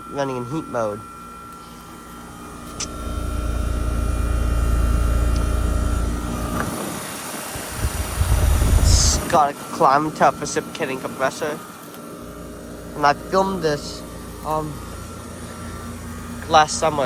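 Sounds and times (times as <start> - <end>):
compressor humming: 0.0 - 17.0
unit switching off click: 5.2 - 5.6
wind rumble on microphone: 6.4 - 9.4.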